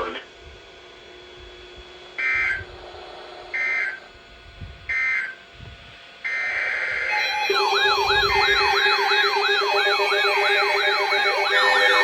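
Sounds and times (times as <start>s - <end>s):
raspy two-tone digital bursts: 6.3s - 12.0s.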